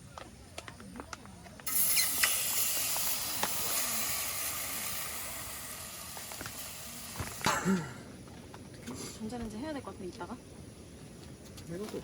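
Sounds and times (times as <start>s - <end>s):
loud steady hiss: 1.5s - 12.0s.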